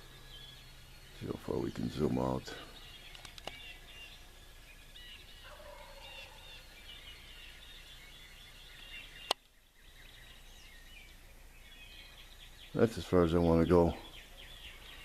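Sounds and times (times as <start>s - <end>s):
small birds chirping: 0.0s - 15.0s
turkey gobbling: 5.4s - 6.6s.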